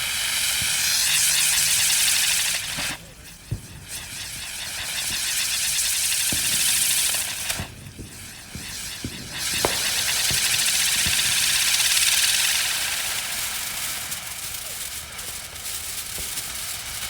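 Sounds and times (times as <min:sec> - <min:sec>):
faint firework pops: 0:00.0 - 0:17.0
firework wheel hissing: 0:00.0 - 0:17.0.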